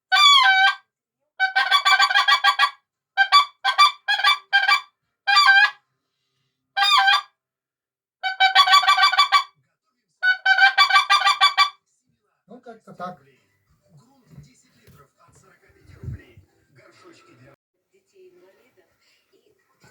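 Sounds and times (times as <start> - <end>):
goose call honks and clucks: 0.1 - 0.8, 1.4 - 5.8, 6.8 - 7.3, 8.2 - 9.5, 10.2 - 11.8.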